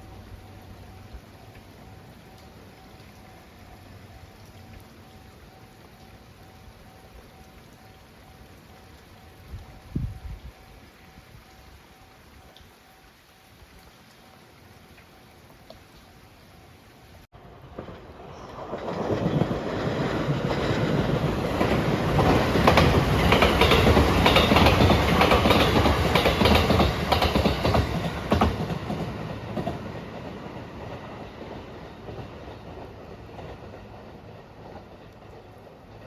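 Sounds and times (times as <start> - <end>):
train passing at speed: 0.0 - 10.3, 17.4 - 36.0
wheels clattering over rail joints: 17.5 - 36.0.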